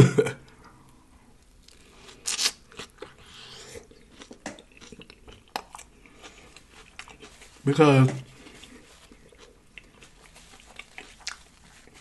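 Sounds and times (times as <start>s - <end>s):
close-miked chewing: 1.6s - 7.6s, 8.4s - 12.0s.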